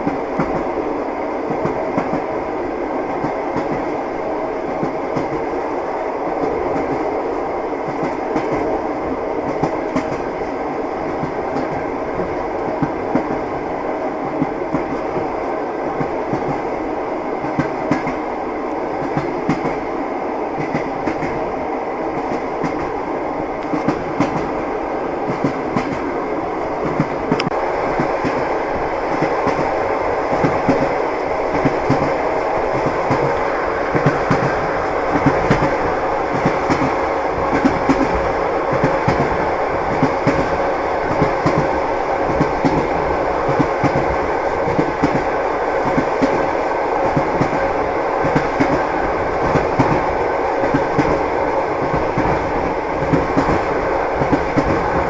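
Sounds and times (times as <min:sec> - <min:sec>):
train rumble: 0:00.0 - 0:55.0
train wheels clicking over rail joints: 0:09.4 - 0:16.7, 0:23.6 - 0:26.2, 0:26.8 - 0:55.0.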